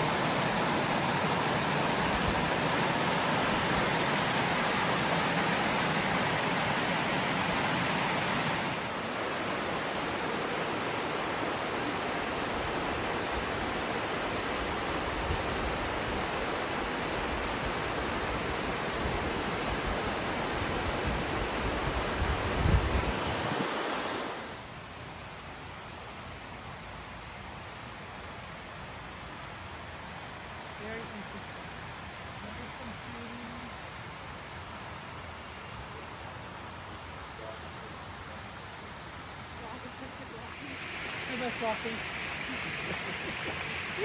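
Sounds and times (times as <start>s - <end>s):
waterfall rushing: 0.0s - 24.6s, 35.7s - 44.0s.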